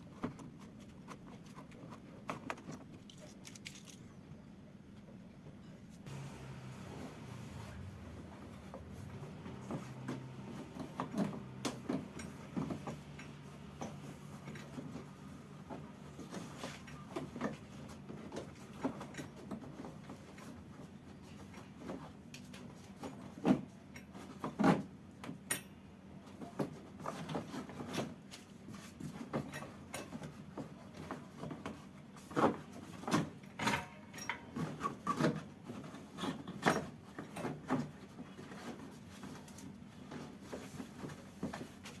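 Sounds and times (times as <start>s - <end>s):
low steady hum: 3.1s - 18.4s
hand tools clicking and knocking: 8.8s - 19.7s, 33.1s - 38.0s.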